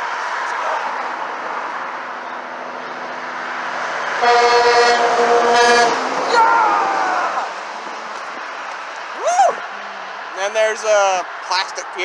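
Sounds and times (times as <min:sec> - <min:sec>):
traffic passing: 0:00.0 - 0:12.0
truck air horn blast: 0:04.2 - 0:06.1.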